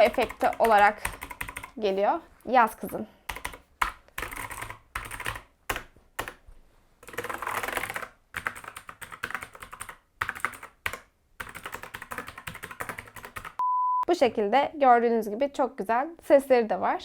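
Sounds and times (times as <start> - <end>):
mechanical keyboard typing: 0.0 - 1.8, 3.3 - 6.4, 7.0 - 13.6.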